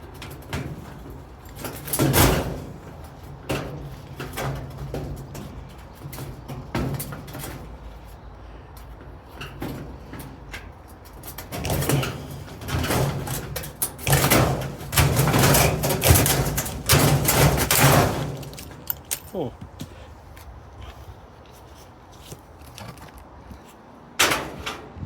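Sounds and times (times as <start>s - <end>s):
metal panels rattling and clanking: 0.0s - 8.3s, 9.0s - 19.4s, 24.2s - 25.0s.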